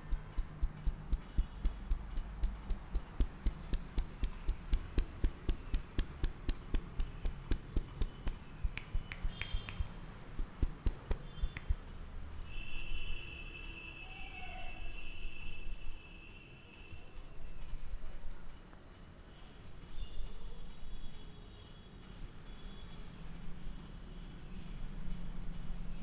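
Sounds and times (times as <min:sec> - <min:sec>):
hands slapping on head: 0:00.0 - 0:11.8.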